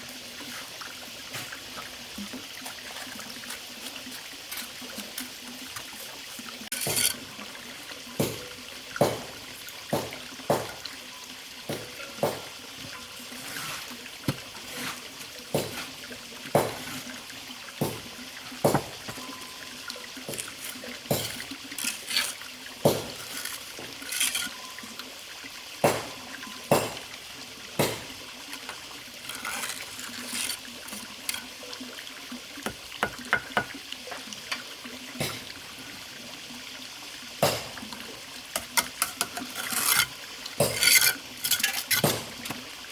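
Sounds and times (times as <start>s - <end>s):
water splashing and sloshing: 0.0s - 42.9s.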